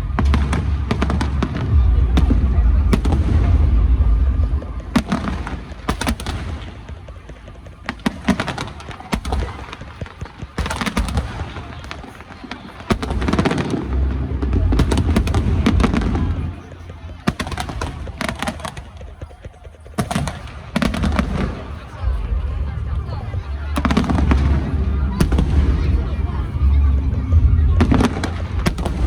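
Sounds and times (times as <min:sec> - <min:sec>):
low rumble: 0:00.0 - 0:05.8, 0:13.1 - 0:16.6, 0:22.0 - 0:29.0
fireworks bangs: 0:00.0 - 0:29.0
fireworks crackling: 0:00.0 - 0:29.0.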